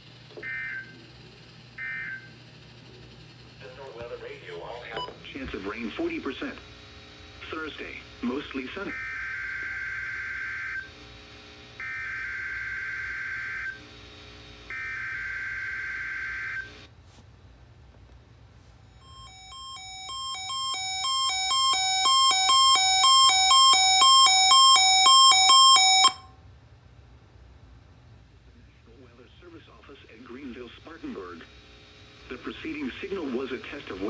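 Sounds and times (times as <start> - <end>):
alert radio alarm beeps: 0.4 - 1.0, 1.8 - 2.4, 4.9 - 5.2, 19.0 - 26.3.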